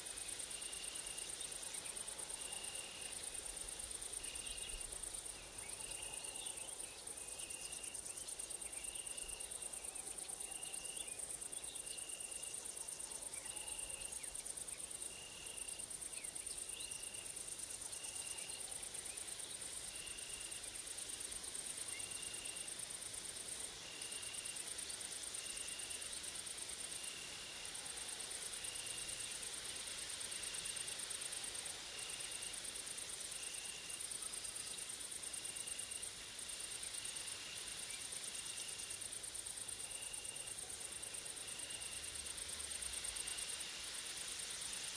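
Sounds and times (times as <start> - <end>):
insects trilling: 0.0 - 44.9.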